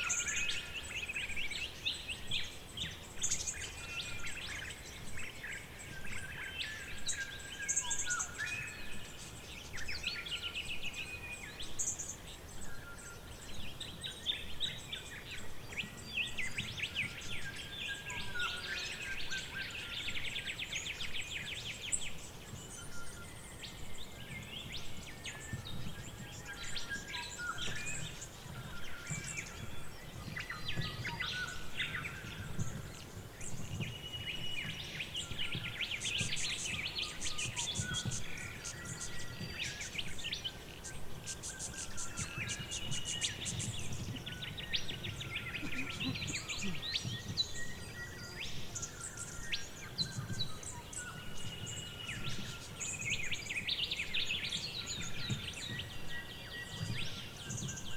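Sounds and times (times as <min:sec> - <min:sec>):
songbirds chirping and singing: 0:00.0 - 0:57.9
bird trill: 0:14.2 - 0:57.8.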